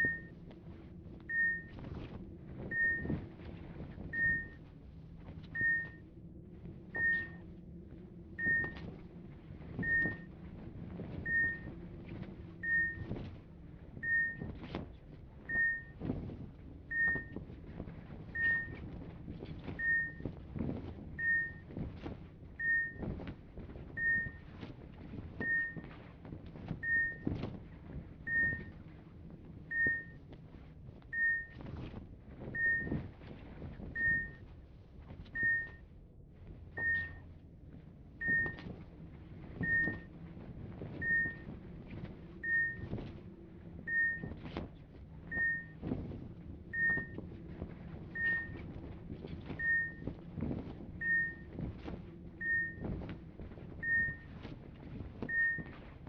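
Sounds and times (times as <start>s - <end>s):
medical equipment beeping: 0.0s - 0.4s, 1.2s - 1.8s, 2.6s - 3.3s, 4.1s - 4.6s, 5.5s - 6.2s, 6.9s - 7.6s, 8.3s - 8.9s, 9.8s - 10.3s, 11.2s - 11.8s, 12.5s - 13.2s, 14.0s - 14.5s, 15.5s - 16.0s, 16.9s - 17.4s, 18.4s - 18.9s, 19.8s - 20.3s, 21.2s - 21.7s, 22.6s - 23.0s, 23.9s - 24.5s, 25.4s - 25.9s, 26.8s - 27.3s, 28.3s - 28.8s, 29.7s - 30.2s, 31.1s - 31.6s, 32.6s - 33.1s, 33.9s - 34.4s, 35.4s - 35.9s, 36.8s - 37.3s, 38.2s - 38.7s, 39.6s - 40.1s, 41.0s - 41.6s, 42.3s - 43.1s, 43.8s - 44.4s, 45.3s - 45.8s, 46.7s - 47.3s, 48.1s - 48.7s, 49.6s - 50.1s, 51.0s - 51.7s, 52.4s - 53.0s, 53.8s - 54.4s, 55.3s - 55.8s
low hum: 0.0s - 56.0s.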